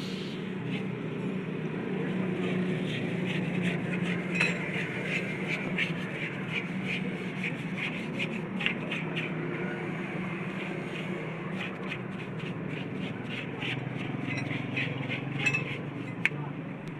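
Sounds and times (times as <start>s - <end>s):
metal tools clinking: 4.3s - 4.6s, 14.3s - 14.6s, 15.4s - 15.7s.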